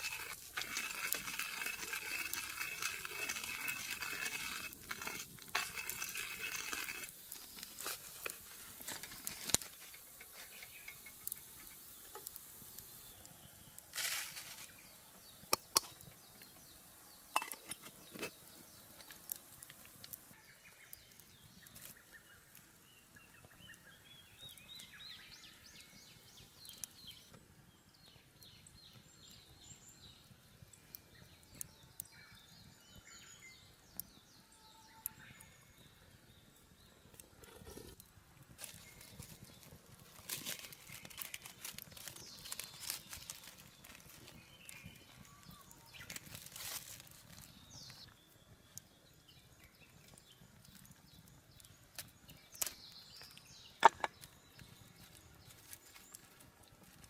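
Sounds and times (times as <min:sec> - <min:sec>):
sizzle-like hiss: 0:07.1 - 0:20.4.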